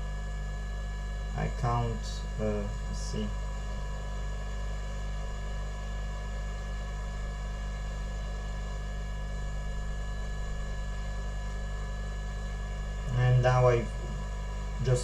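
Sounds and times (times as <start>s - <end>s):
electrical hum: 0.0s - 15.0s
hot air station hissing: 1.4s - 3.6s, 12.5s - 15.0s.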